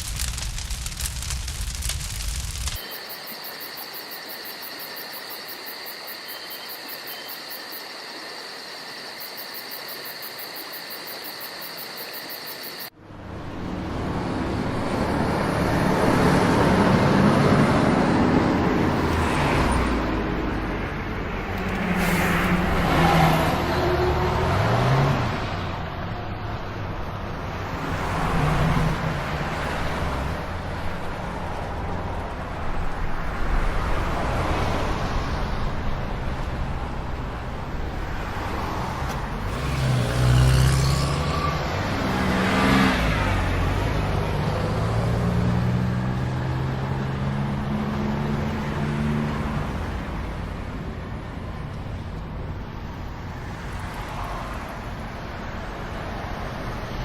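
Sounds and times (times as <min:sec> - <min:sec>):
vehicles passing: 0:12.9 - 0:57.0.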